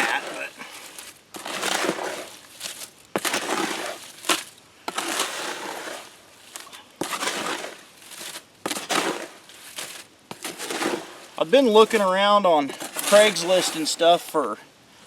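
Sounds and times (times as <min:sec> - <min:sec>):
gritty scraping of wet concrete: 0:00.0 - 0:14.5.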